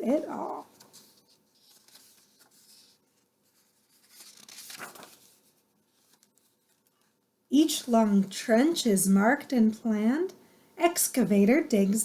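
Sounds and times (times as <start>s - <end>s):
paper page turning: 0.6s - 7.2s.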